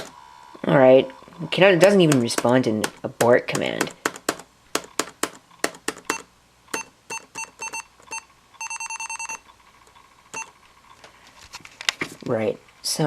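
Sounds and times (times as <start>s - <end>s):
short electronic beeps: 6.1s - 9.5s, 10.3s - 10.5s.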